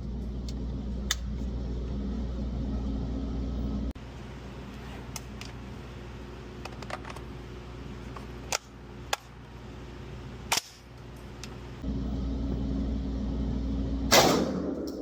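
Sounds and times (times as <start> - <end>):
shotgun shots: 14.1 - 14.8.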